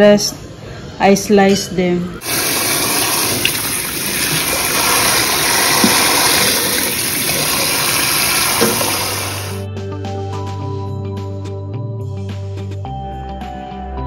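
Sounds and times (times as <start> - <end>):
tap water running into sink: 2.2 - 9.6.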